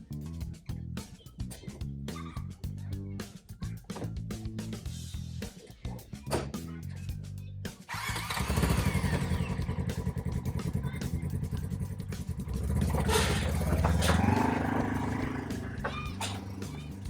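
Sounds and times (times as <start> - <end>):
off-road vehicle engine running: 6.2 - 17.0.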